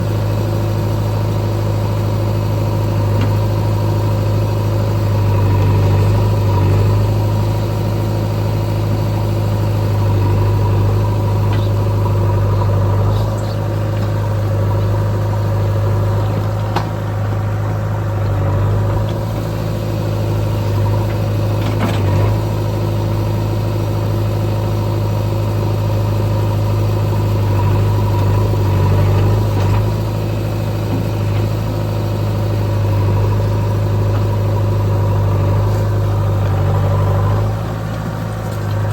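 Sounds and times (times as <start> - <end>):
diesel engine droning: 0.0 - 38.9.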